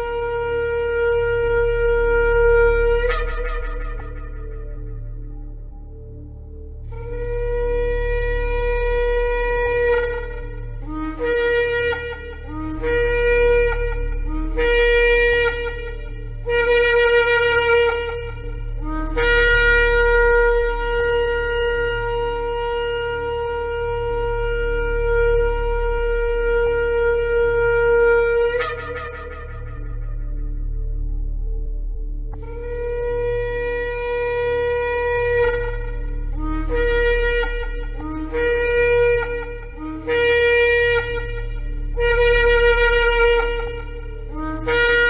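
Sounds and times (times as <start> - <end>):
steady low hum: 0.0 - 45.0
ram's horn blasts: 32.4 - 45.0.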